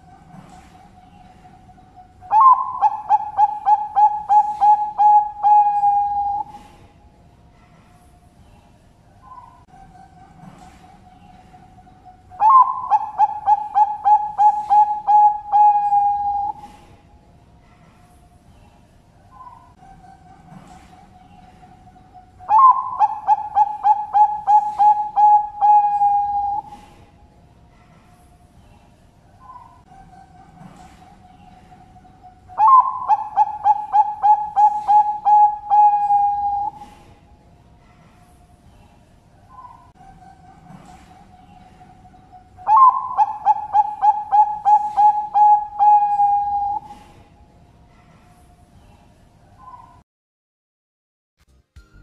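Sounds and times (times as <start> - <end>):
dove cooing: 0.0 - 6.8, 9.2 - 17.0, 19.3 - 27.0, 29.4 - 37.2, 39.5 - 47.2
faint cooing of another dove: 0.2 - 6.9, 10.3 - 17.0, 19.3 - 27.2, 27.8 - 47.4.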